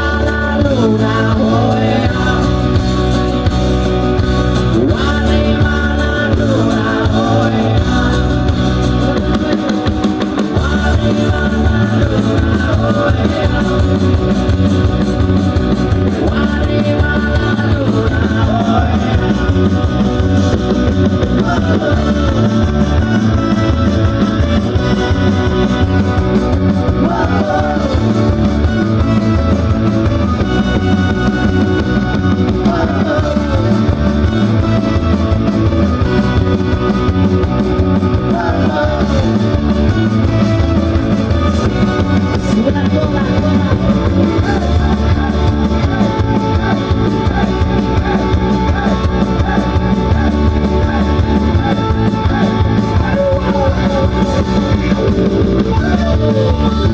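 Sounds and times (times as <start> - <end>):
drum kit: 0.0 - 56.9
electric guitar: 0.0 - 56.9.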